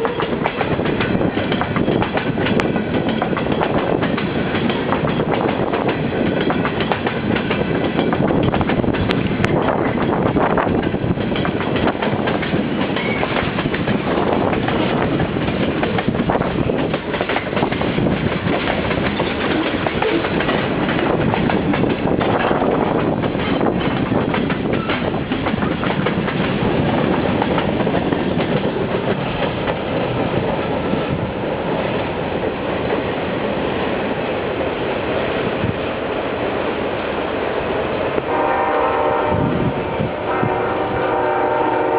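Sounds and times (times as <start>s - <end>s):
freight train wheels clattering: 0.0s - 33.2s.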